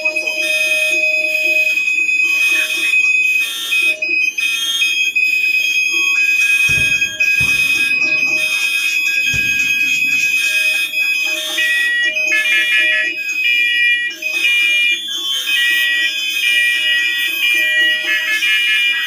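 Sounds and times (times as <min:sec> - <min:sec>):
fire alarm horns: 0:00.0 - 0:19.0
smoke alarms beeping: 0:00.0 - 0:19.0
low repeating pulse: 0:06.7 - 0:11.6.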